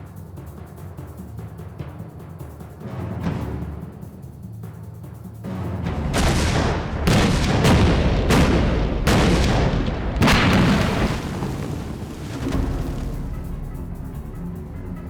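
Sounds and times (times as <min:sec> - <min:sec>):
deep percussion booms: 0:05.8 - 0:15.0.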